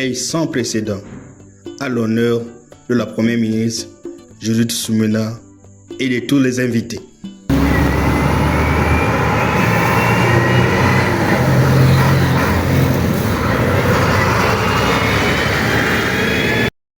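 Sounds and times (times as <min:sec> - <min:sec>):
aircraft engines droning: 0:07.5 - 0:16.8
high engine whine: 0:07.5 - 0:16.8.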